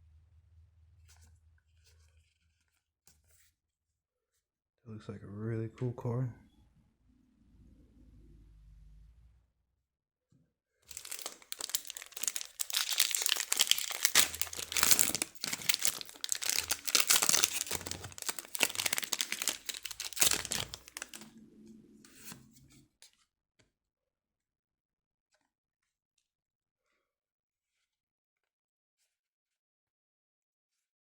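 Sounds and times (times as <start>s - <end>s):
foil wrapper crinkling and tearing: 10.9s - 21.3s.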